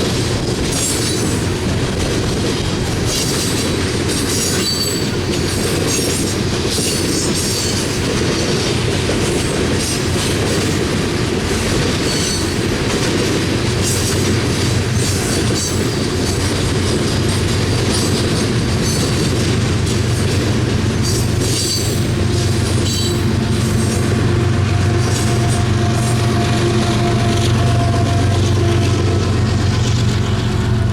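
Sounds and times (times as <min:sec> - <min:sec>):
train wheels clicking over rail joints: 0:00.0 - 0:30.9
high wheel squeals: 0:04.4 - 0:05.2, 0:12.0 - 0:12.7, 0:21.0 - 0:24.2.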